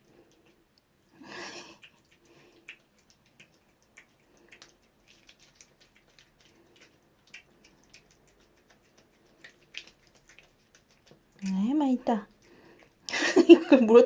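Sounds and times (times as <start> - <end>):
cat licking and lapping: 0.0 - 13.8.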